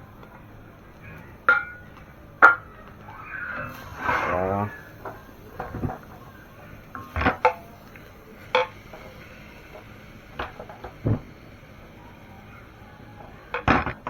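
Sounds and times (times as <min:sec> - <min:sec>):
vegetables frying in oil: 0:00.0 - 0:14.0
spatula scraping frying pan: 0:02.4 - 0:11.8.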